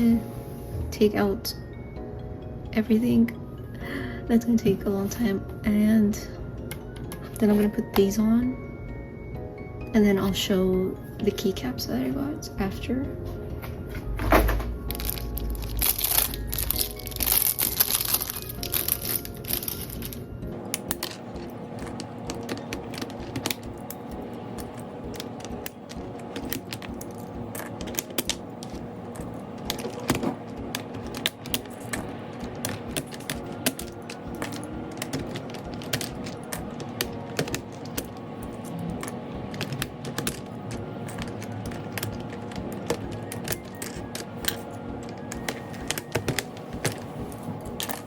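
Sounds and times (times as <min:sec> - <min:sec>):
plastic keycaps clicking and clacking: 0:14.2 - 0:48.0.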